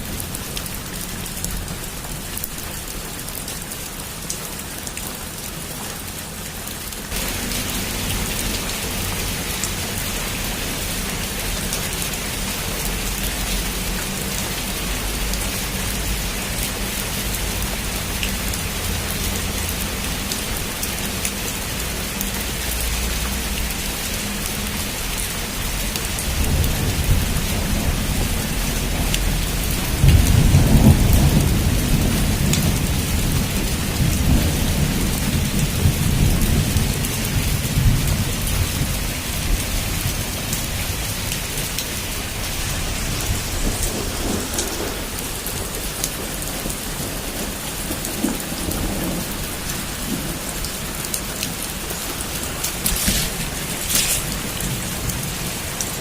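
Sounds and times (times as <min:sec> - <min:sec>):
heavy rain drumming on a roof: 0:00.0 - 0:56.0
thunder rumbling: 0:25.0 - 0:56.0
raindrops ticking: 0:43.5 - 0:56.0.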